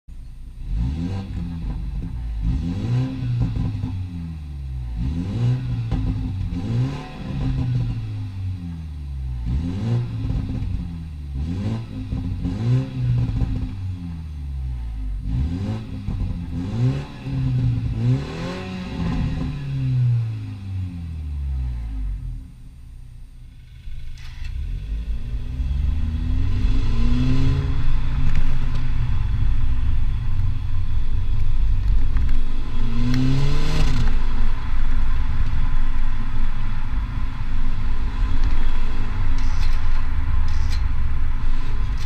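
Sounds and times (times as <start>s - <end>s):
car exhaust under hard acceleration: 0.1s - 42.0s
exhaust cracks at gear shifts: 27.6s - 42.0s.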